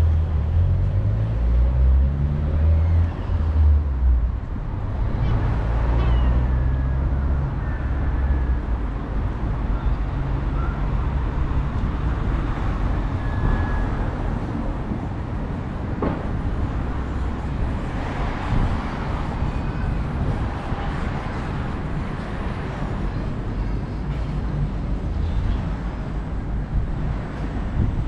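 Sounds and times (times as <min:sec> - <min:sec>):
wind buffeting microphone: 0:11.2 - 0:28.0.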